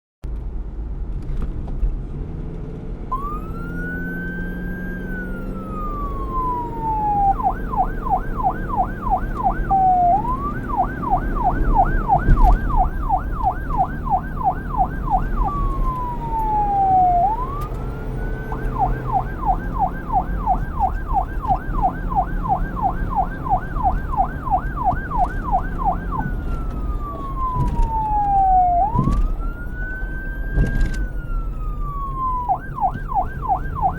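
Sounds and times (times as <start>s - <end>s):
low street noise: 0.2s - 33.9s
police siren wailing and yelping: 3.1s - 33.9s.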